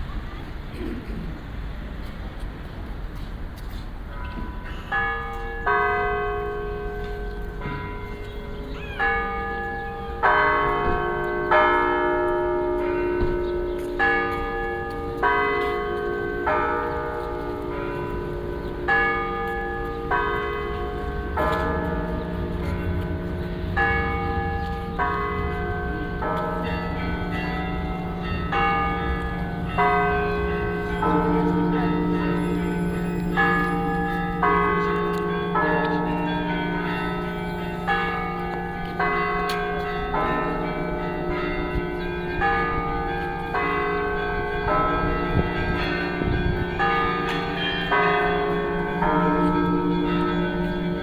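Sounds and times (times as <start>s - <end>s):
large low bell hum: 4.3s - 51.0s
small bells struck rhythmically: 21.2s - 49.5s.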